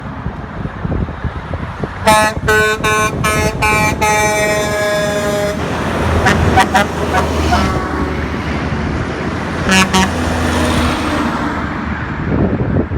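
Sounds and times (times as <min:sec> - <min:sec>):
low road rumble: 0:00.0 - 0:12.9
truck horn two-note chord: 0:02.1 - 0:08.0, 0:09.7 - 0:10.2.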